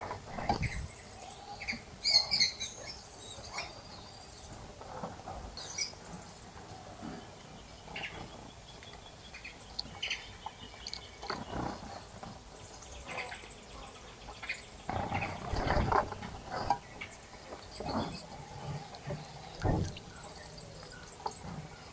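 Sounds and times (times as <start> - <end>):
small birds chirping: 0.0 - 21.9
water splashing in bird bath: 14.9 - 21.1.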